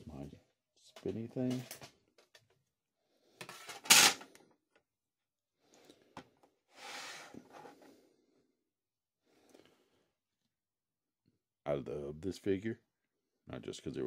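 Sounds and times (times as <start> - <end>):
objects scraping and rustling: 3.3 - 4.4, 6.7 - 8.1.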